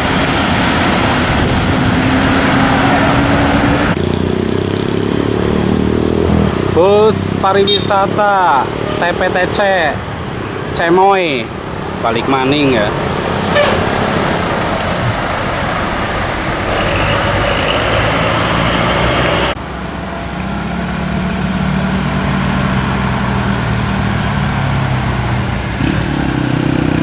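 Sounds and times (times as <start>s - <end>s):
buses passing on road: 0.0s - 27.0s.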